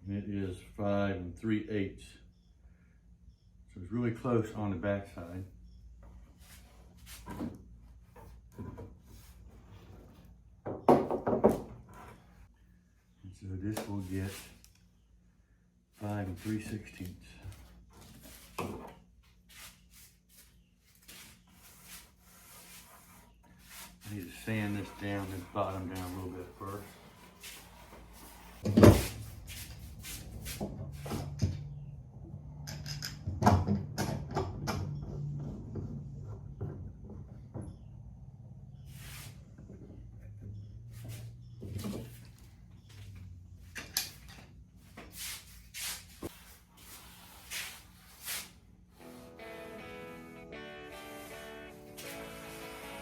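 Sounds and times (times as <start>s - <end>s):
sandpaper scraping wood: 19.5s - 30.6s, 45.1s - 49.2s.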